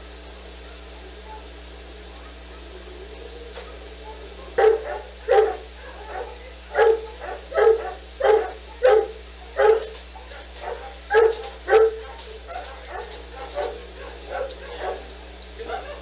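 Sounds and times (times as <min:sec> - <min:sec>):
dog barking: 0:03.6 - 0:16.0.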